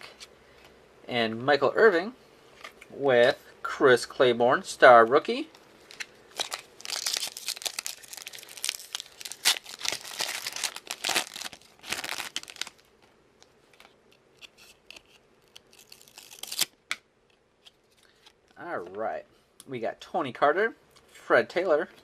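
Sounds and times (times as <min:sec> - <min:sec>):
card pack wrapper crinkling: 0:05.8 - 0:16.8.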